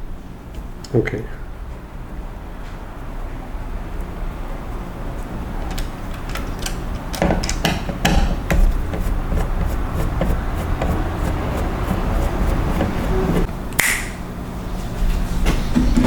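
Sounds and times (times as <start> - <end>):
screwdriver and metal parts clicking: 5.6 - 7.8.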